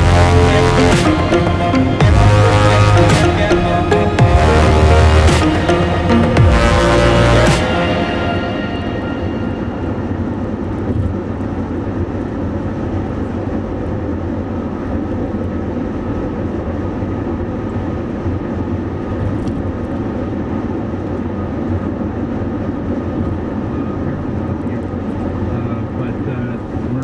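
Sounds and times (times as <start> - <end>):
low rumbling noise: 0.0 - 11.6.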